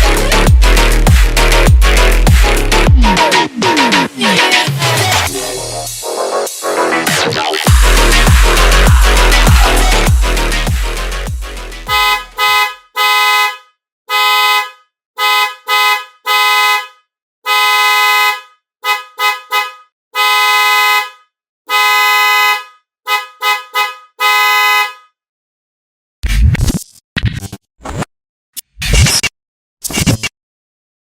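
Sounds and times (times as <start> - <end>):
dual-tone horn blasts: 11.8 - 25.1.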